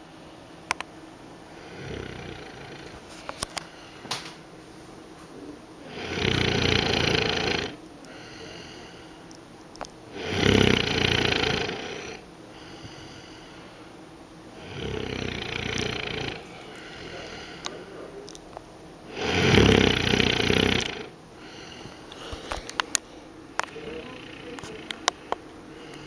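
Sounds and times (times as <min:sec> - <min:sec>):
woman snoring: 0:01.5 - 0:03.0, 0:05.8 - 0:09.0, 0:10.1 - 0:13.6, 0:14.5 - 0:18.1, 0:19.1 - 0:22.6, 0:23.6 - 0:26.0.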